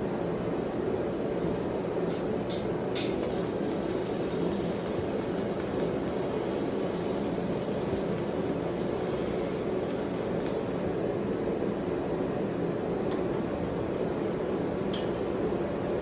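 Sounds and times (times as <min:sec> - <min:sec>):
steady noisy hum: 0:00.0 - 0:16.0
welding arc crackling and hissing: 0:03.0 - 0:11.0.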